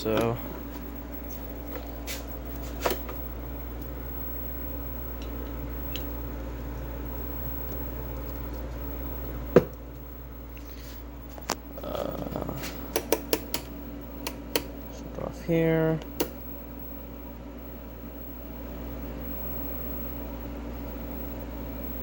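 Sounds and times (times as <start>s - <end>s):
low electrical hum: 0.0s - 22.0s
sharp clicks: 12.9s - 14.7s.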